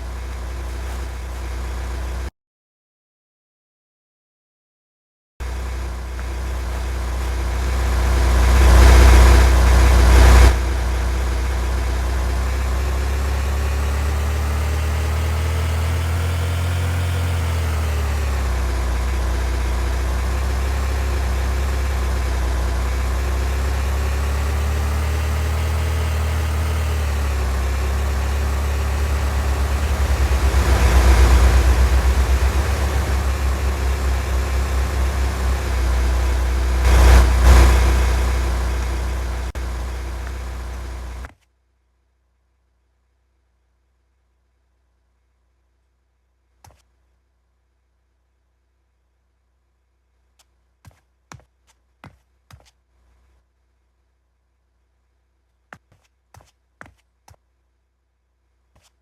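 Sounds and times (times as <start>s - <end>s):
car engine and road rumble: 0.0s - 2.3s, 5.4s - 41.3s
rushes of noise: 24.1s - 41.2s.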